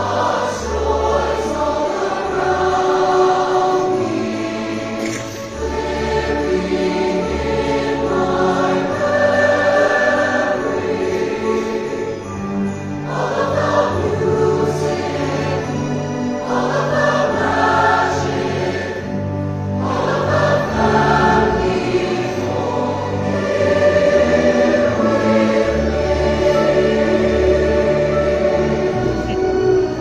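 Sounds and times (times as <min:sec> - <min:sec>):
choir singing sustained chords: 0:00.0 - 0:30.0.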